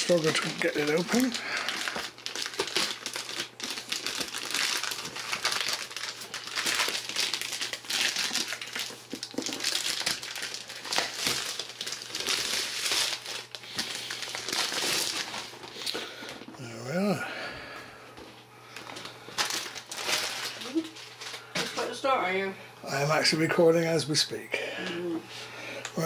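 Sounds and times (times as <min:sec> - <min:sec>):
plastic wrapping crinkling: 0:00.0 - 0:16.5, 0:18.8 - 0:22.0.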